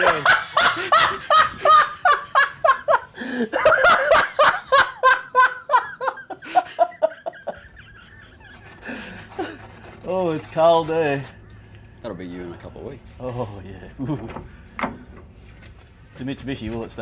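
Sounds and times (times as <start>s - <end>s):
people laughing: 0.0s - 11.3s.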